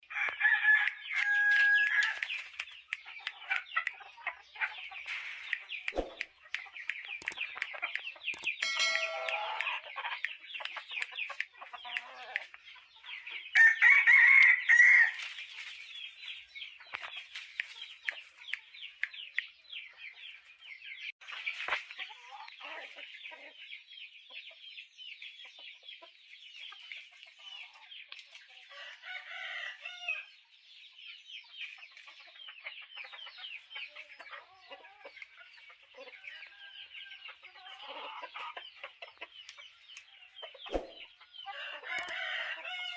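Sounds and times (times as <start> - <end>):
chickens clucking: 0.1 - 42.9.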